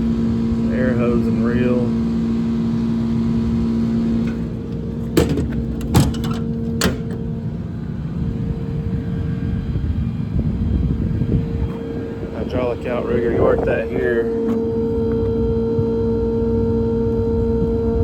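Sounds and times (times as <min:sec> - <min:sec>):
diesel engine idling: 0:00.0 - 0:18.0
sharp knocks: 0:04.2 - 0:07.2.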